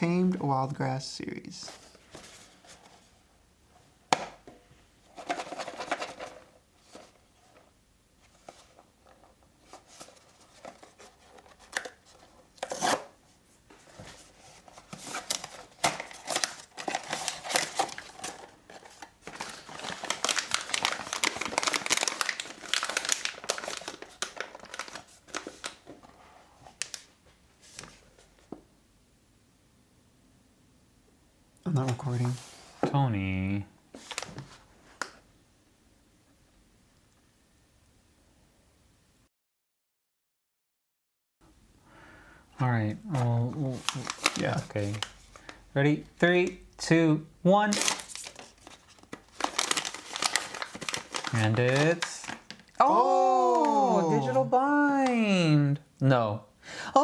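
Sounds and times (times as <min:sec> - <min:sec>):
packaging crinkling and tearing: 0:09.6 - 0:13.1, 0:14.1 - 0:27.1, 0:34.0 - 0:35.1, 0:43.1 - 0:45.6, 0:47.6 - 0:52.8.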